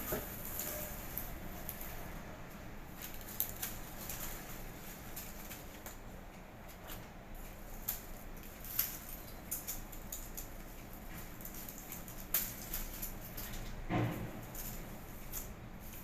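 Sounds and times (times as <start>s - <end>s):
leaves rustling: 0.0s - 6.2s
twigs clicking and snapping: 2.9s - 13.9s.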